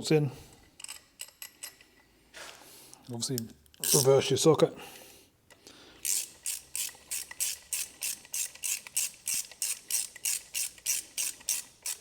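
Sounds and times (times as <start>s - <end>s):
socket ratchet clicking: 6.0s - 12.0s.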